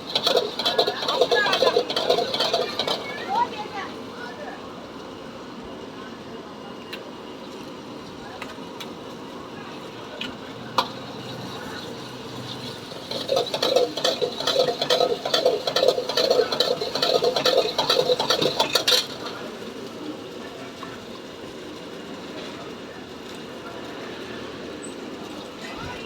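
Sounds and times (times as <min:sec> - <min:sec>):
utensil clattering in a metal pan: 0:00.0 - 0:03.8, 0:10.8 - 0:19.5.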